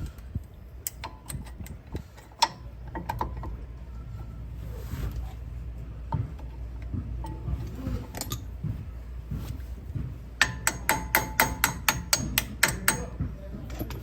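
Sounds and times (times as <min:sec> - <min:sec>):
hammer tapping metal: 0:10.4 - 0:14.0.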